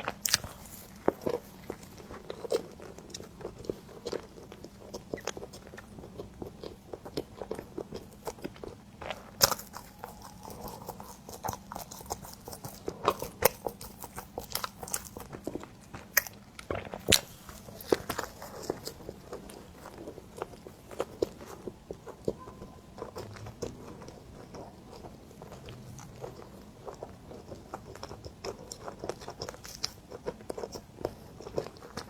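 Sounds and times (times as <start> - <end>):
close-miked chewing of bread: 0.0 - 32.0.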